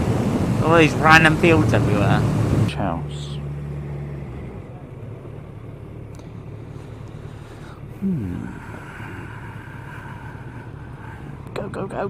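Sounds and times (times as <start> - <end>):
motorcycle engine cruising: 0.0 - 12.0
faint steady whine: 3.1 - 12.0.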